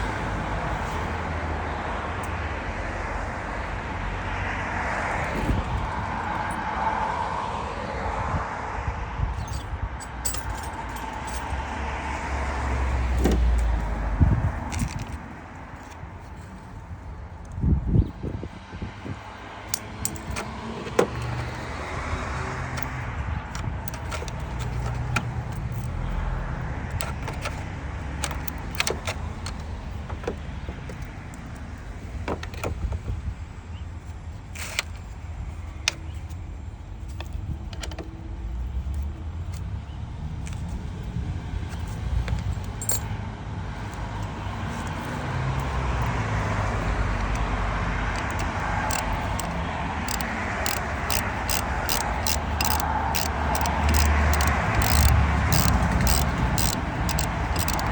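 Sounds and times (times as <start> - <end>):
metallic clicks of hand tools: 19.7 - 21.7, 22.7 - 26.2, 26.9 - 31.4, 48.1 - 57.9.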